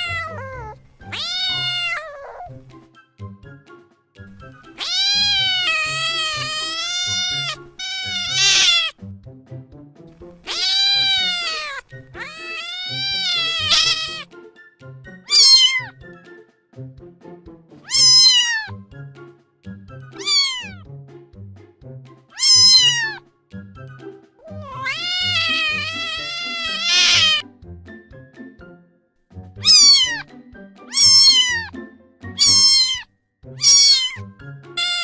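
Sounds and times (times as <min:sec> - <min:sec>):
cat meowing: 0:00.0 - 0:02.6, 0:04.6 - 0:09.0, 0:10.4 - 0:14.3, 0:15.3 - 0:16.0, 0:17.8 - 0:18.8, 0:20.2 - 0:20.8, 0:22.3 - 0:23.2, 0:24.4 - 0:27.4, 0:29.6 - 0:30.3, 0:30.9 - 0:35.0
soft background music: 0:00.0 - 0:35.0.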